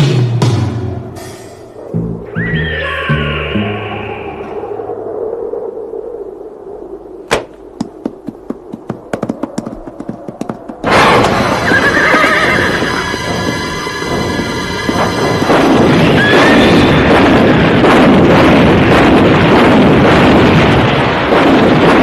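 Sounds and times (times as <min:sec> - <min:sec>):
dramatic soundtrack music: 0:00.0 - 0:04.6, 0:11.2 - 0:19.8
horse hooves clattering: 0:07.3 - 0:18.0
horse whinnying: 0:11.0 - 0:13.3.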